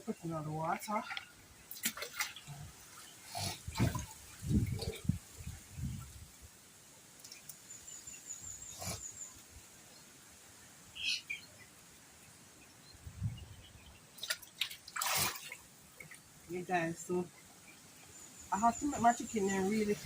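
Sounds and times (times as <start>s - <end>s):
bird chirp: 10.9s - 14.7s.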